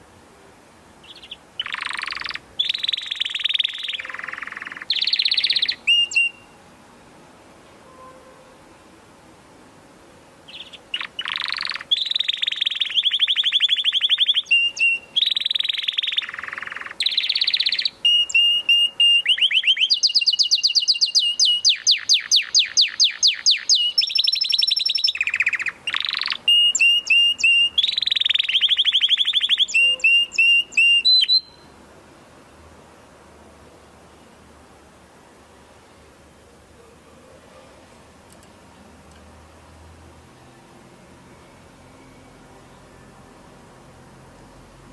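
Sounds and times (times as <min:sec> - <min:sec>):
canary singing trills: 0:01.0 - 0:06.6, 0:10.4 - 0:31.8.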